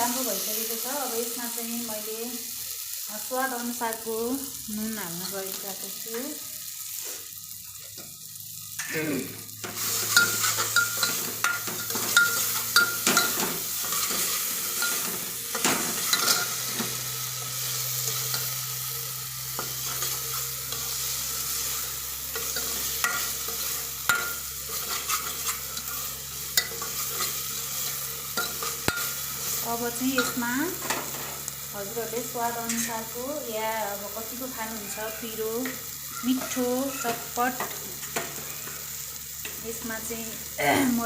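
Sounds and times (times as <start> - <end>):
food sizzling in oil: 0.0 - 41.0
spoon scraping pot: 22.4 - 29.1.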